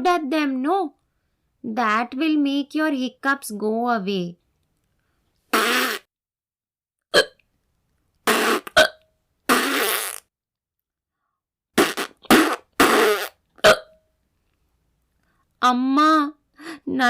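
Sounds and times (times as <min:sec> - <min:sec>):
hiccups: 0:05.5 - 0:06.1, 0:07.2 - 0:07.4, 0:08.2 - 0:10.2, 0:11.8 - 0:14.0.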